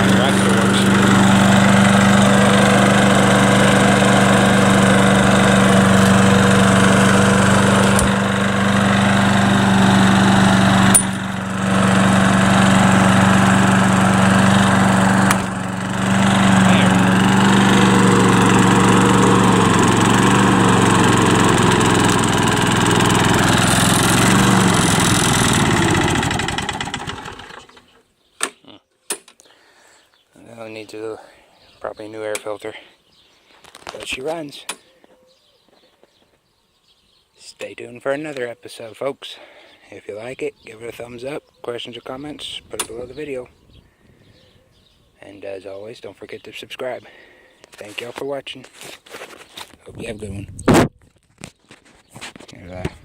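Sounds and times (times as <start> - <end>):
lawn mower engine running: 0.0 - 28.0.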